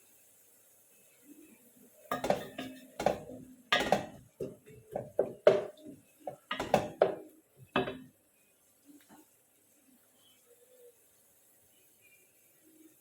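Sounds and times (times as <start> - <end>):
metal spoon knocking on pot: 2.1 - 8.1.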